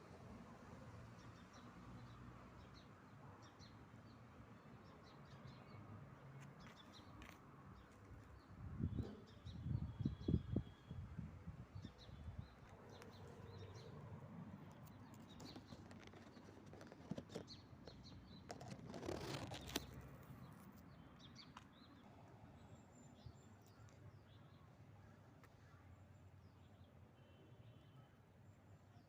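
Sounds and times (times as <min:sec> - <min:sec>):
small birds chirping: 0:11.8 - 0:25.8
brief rustling: 0:14.7 - 0:20.4.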